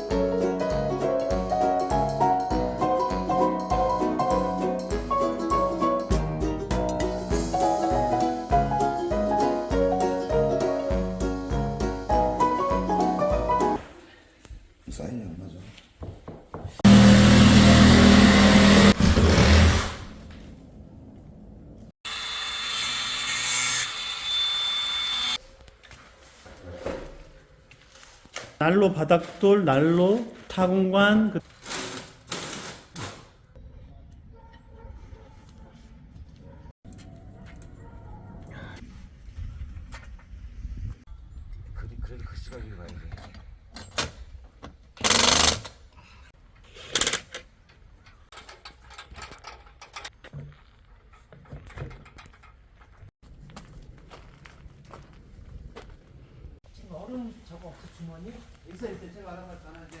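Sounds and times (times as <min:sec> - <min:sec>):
power drill whining: 0:16.9 - 0:19.8, 0:22.1 - 0:25.4
power tool bursts: 0:16.9 - 0:20.1, 0:45.0 - 0:45.7.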